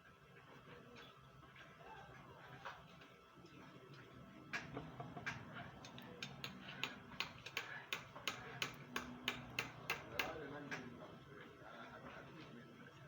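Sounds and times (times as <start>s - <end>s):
regular sharp ticking: 4.6s - 10.9s.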